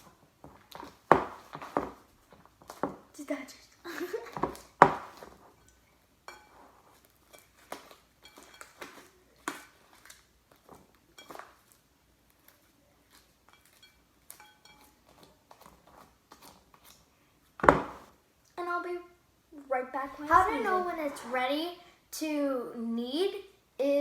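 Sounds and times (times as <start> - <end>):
faint clink: 5.6 - 6.7, 13.5 - 15.0.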